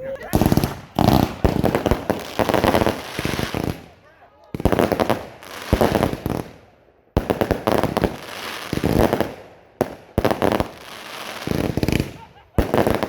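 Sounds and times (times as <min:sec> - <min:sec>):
fireworks crackling pops: 0:00.3 - 0:06.6, 0:07.2 - 0:13.0.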